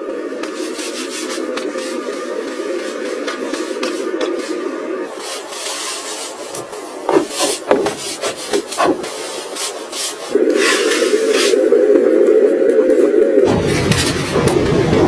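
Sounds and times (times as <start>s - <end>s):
wood scraped and rubbed by hand: 0.0s - 12.1s.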